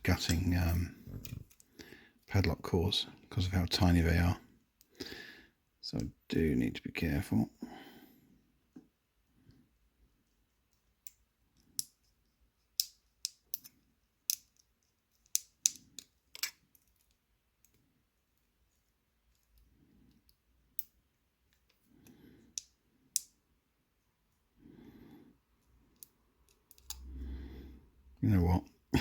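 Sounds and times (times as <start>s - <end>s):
small metal clicks and taps: 12.7s - 17.8s, 25.9s - 27.0s.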